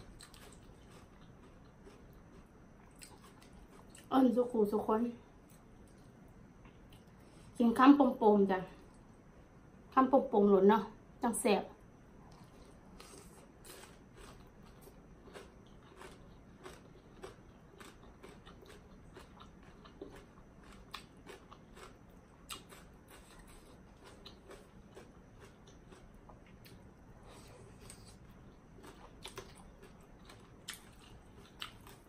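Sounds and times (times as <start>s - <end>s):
person chewing and crunching: 0.0s - 4.1s, 12.3s - 32.0s.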